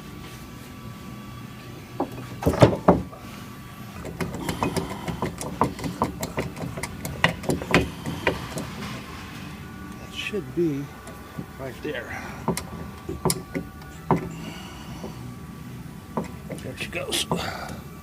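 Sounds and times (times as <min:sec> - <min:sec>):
low hum: 0:00.0 - 0:18.0
metal knocks on vehicle frame: 0:02.0 - 0:03.2, 0:04.0 - 0:08.7.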